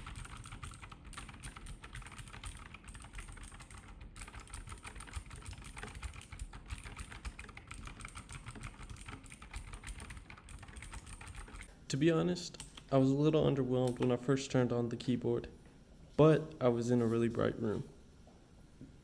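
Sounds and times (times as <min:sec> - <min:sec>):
mechanical keyboard typing: 0:00.0 - 0:11.7.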